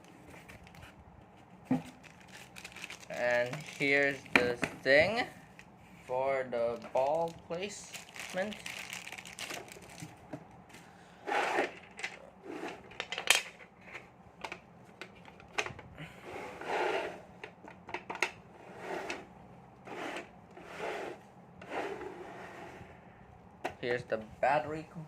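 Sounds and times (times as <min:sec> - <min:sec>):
plastic toy parts clicking: 0:02.3 - 0:04.3.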